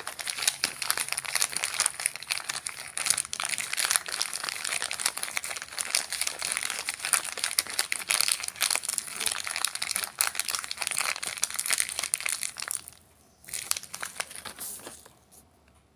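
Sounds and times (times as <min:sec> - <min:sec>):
packet crinkling: 0:00.0 - 0:15.3.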